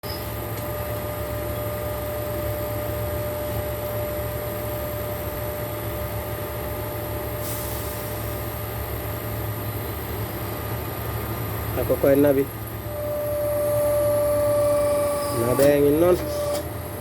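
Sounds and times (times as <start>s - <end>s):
mid-pitched whine: 11.7s - 17.0s
machine hum: 12.6s - 17.0s.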